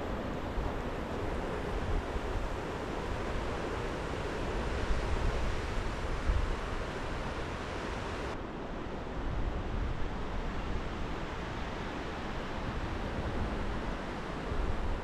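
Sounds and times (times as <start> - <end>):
wind blowing through trees: 0.0 - 8.4.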